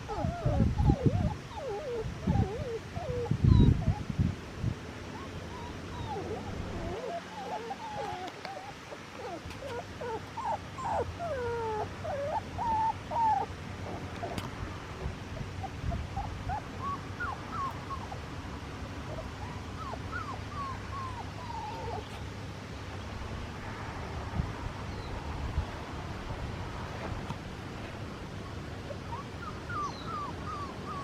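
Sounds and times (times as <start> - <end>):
puppies whimpering and yipping: 0.0 - 4.0, 5.1 - 14.4, 15.4 - 18.3, 19.0 - 22.2, 28.4 - 31.0
low steady rumble: 2.1 - 7.0.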